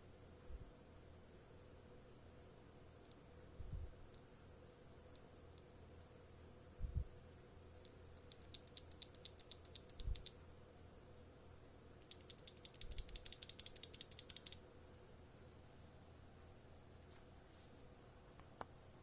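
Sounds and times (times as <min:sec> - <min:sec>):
mechanical keyboard keys clacking: 0:12.0 - 0:14.6.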